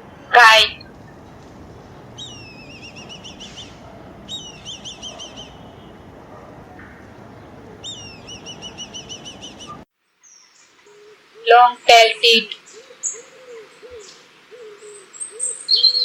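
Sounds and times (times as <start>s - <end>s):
kite calling: 2.1s - 9.8s.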